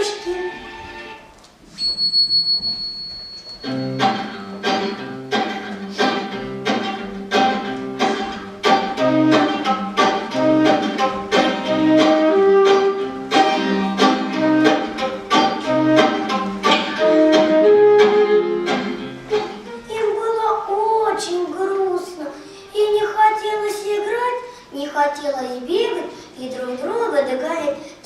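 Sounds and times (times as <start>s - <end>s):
strings playing quick repeated notes: 3.7s - 19.9s.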